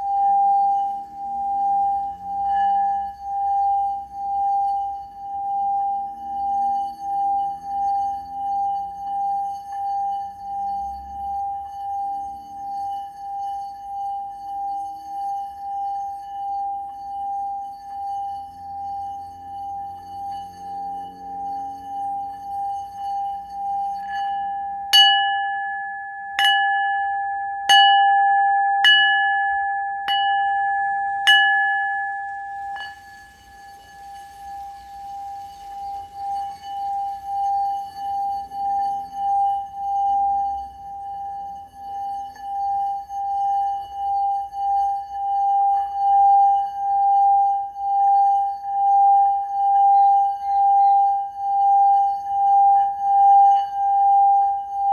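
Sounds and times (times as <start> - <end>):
singing bowl being struck: 0.0 - 10.2, 17.8 - 54.9
singing bowl ringing: 0.0 - 54.9.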